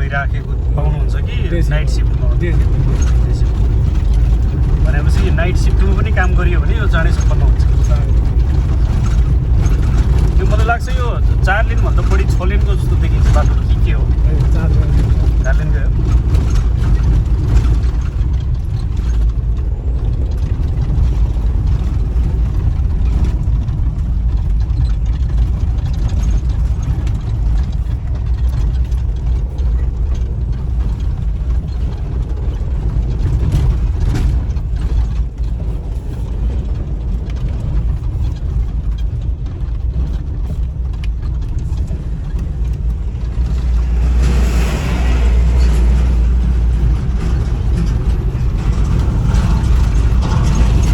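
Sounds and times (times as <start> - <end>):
vehicle engine and road rumble: 0.0 - 50.9
rushing air: 42.0 - 50.9.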